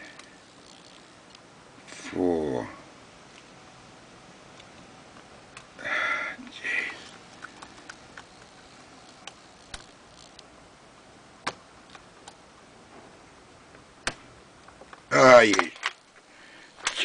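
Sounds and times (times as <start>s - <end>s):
loud breaths: 5.8s - 7.2s, 16.2s - 16.9s.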